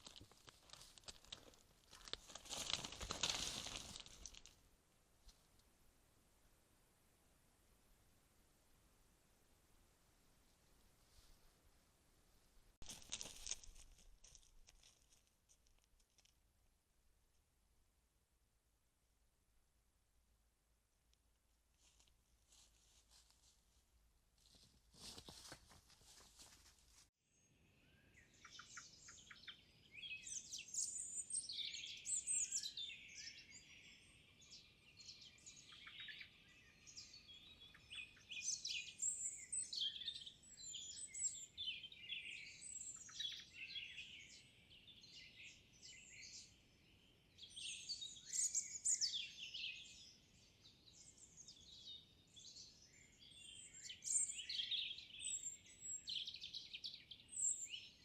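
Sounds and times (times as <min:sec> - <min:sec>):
songbirds singing: 0:27.3 - 0:58.0.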